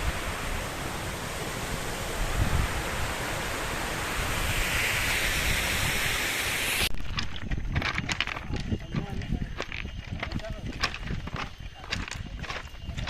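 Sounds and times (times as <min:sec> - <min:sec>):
flowing water rushing: 0:00.0 - 0:06.9.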